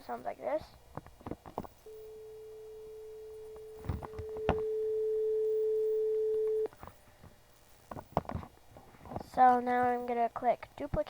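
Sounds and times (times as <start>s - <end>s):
steady sine tone: 1.7s - 7.9s.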